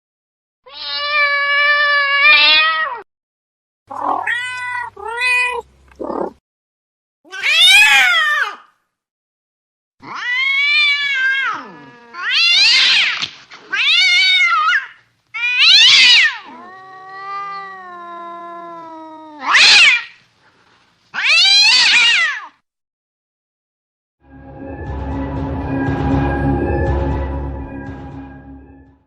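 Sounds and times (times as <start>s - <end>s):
angry cat yowling: 0.7s - 3.0s, 3.9s - 6.4s, 7.3s - 8.7s, 10.0s - 20.2s, 21.2s - 22.6s
music: 24.2s - 29.0s.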